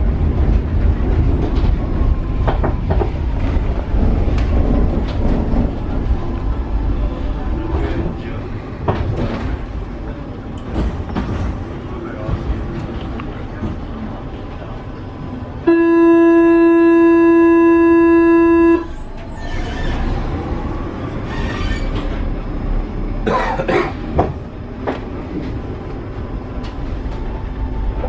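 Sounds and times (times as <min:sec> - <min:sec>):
train rumbling: 0:00.0 - 0:28.0
train door warning buzzer: 0:15.7 - 0:18.9
train door clunks: 0:23.3 - 0:25.6.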